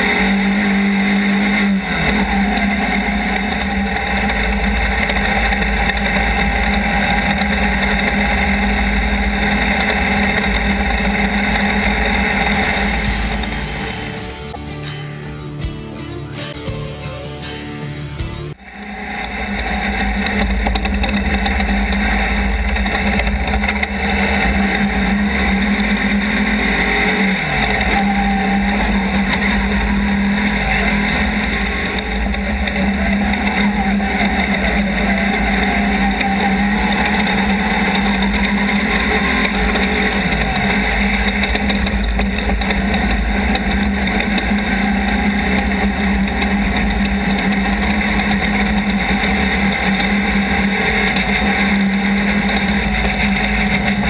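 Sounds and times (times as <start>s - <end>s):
road and wind noise: 0.0s - 16.6s, 18.1s - 54.0s
race vehicle engine running hard: 0.0s - 54.0s.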